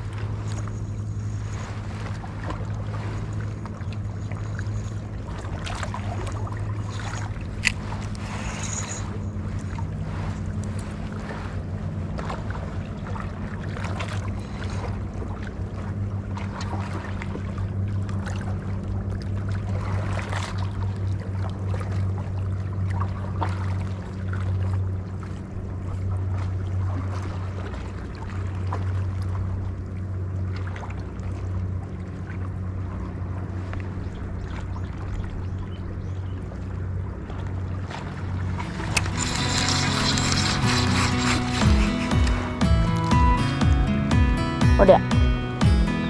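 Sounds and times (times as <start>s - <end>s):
boat engine idling: 0.0s - 46.0s
water lapping: 0.0s - 46.0s
light crackling: 38.6s - 43.1s.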